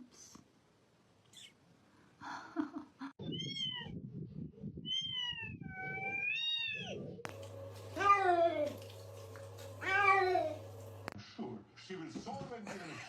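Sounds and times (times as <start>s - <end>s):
cat meowing: 3.2s - 4.0s, 4.8s - 7.0s, 9.8s - 10.6s.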